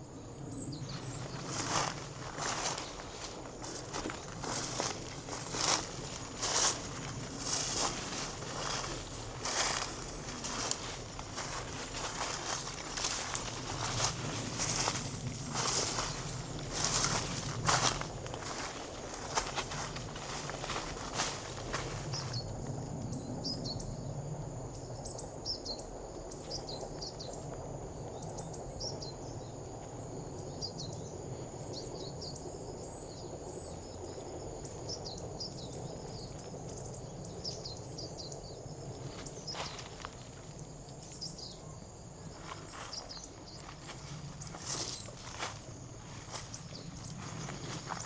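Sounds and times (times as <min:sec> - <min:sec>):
insects trilling: 0:00.0 - 0:48.0
low background hum: 0:00.0 - 0:48.0
footsteps: 0:01.0 - 0:22.4, 0:42.4 - 0:48.0.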